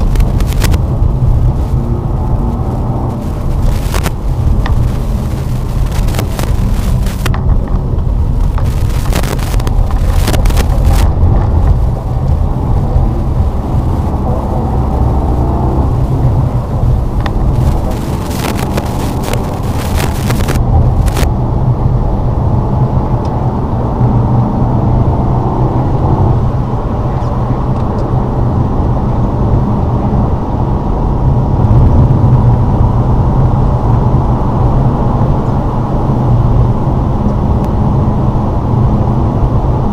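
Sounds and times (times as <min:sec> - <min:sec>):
crackly scraping noise: 0:00.0 - 0:21.3
engine and tyres rumbling: 0:00.0 - 0:39.9.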